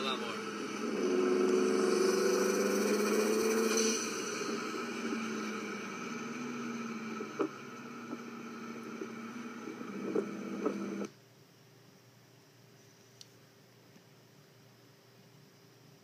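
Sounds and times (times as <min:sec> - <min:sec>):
car engine idling: 0:00.0 - 0:11.1.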